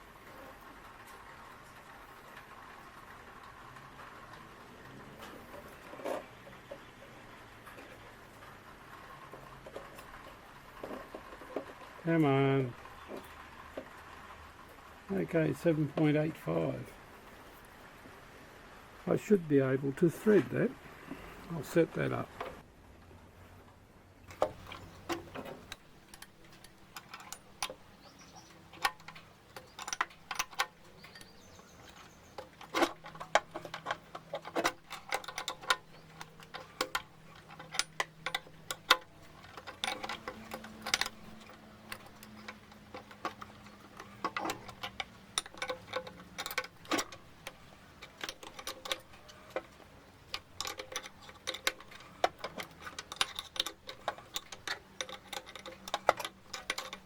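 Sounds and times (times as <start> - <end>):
metallic clicks of tools: 24.3 - 57.0.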